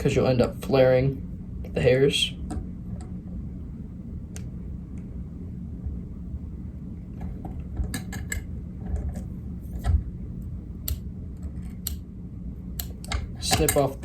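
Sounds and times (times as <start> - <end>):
low hum: 0.0 - 14.0
tools clicking and tapping: 12.8 - 14.0.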